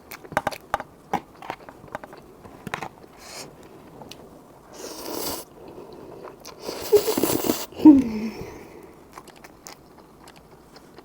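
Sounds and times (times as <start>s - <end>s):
wet mouth chewing noodles: 4.1s - 11.0s
breathy rush of air: 6.0s - 9.0s.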